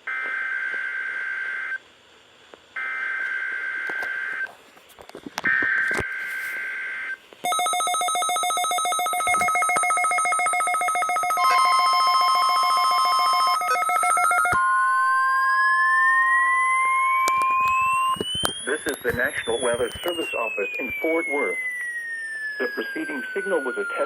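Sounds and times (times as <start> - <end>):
pulsing electronic alarm: 5.5 - 24.0
two-tone digital data warble: 12.9 - 24.0.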